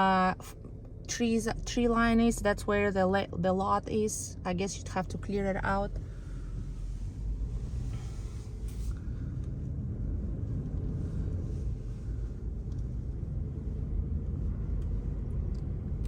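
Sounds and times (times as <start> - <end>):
engine and tyre rumble: 0.0 - 16.0.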